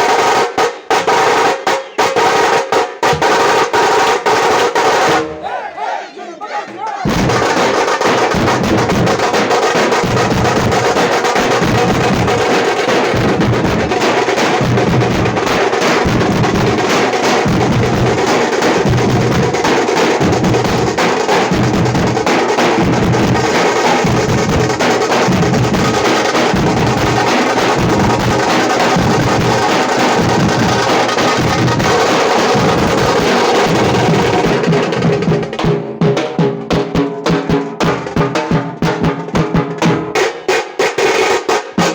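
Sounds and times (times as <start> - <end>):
frame drum beaten with sticks: 0.0 - 41.9.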